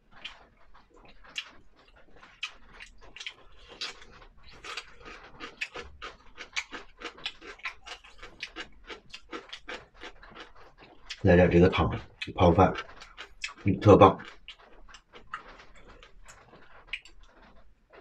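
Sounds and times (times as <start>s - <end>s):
chewing and lip-smacking: 0.1s - 18.0s.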